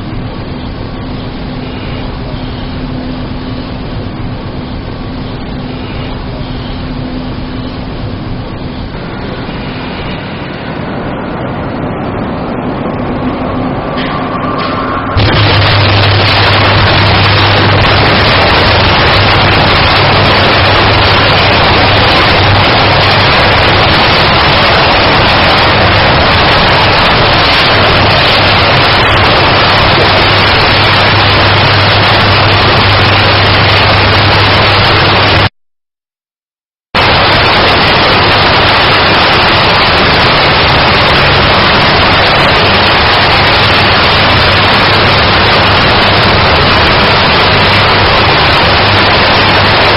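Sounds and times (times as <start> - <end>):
electric arc crackling roar: 0.0 - 35.5, 37.0 - 49.9
low electrical hum: 0.0 - 35.5.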